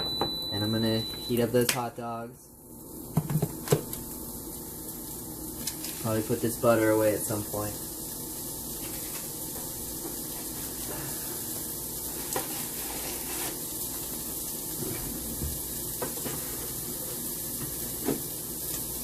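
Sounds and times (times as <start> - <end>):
food sizzling in a pan: 2.6 - 19.0.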